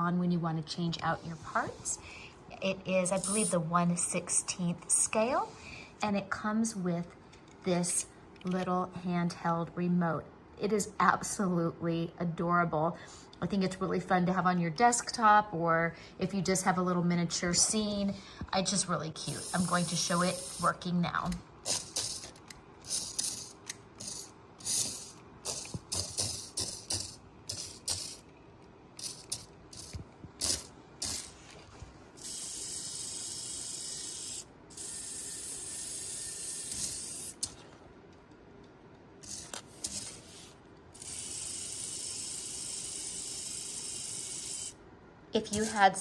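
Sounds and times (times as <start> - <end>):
toy gear motor clicks: 3.2 - 3.6, 19.2 - 28.2, 29.0 - 31.4, 32.2 - 37.6, 39.2 - 40.4, 41.0 - 44.8
small electric motor whirring: 19.2 - 20.9, 21.7 - 28.2, 29.0 - 31.4, 32.2 - 37.6, 39.2 - 44.8.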